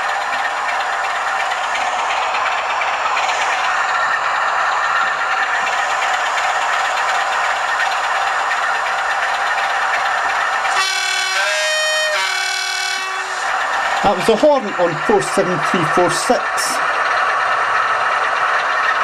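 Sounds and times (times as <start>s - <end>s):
model locomotive engine idling: 0.0s - 19.0s
two-tone horn: 10.8s - 13.5s.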